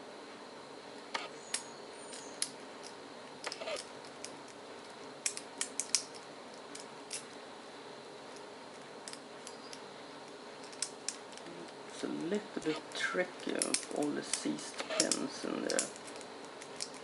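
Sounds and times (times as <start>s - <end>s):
metallic clicks and scrapes of lock pins: 1.5s - 7.4s, 8.3s - 11.8s, 13.4s - 17.0s.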